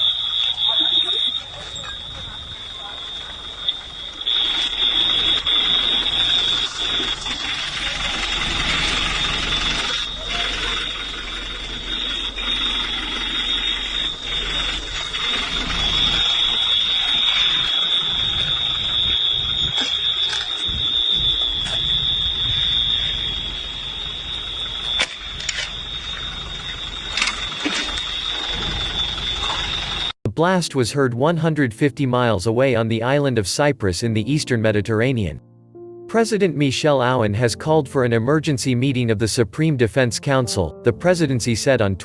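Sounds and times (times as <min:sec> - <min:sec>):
voices: 0:00.0 - 0:23.2, 0:36.1 - 0:42.0
high-pitched alarm tone: 0:00.0 - 0:30.2
noisy background: 0:00.0 - 0:35.4.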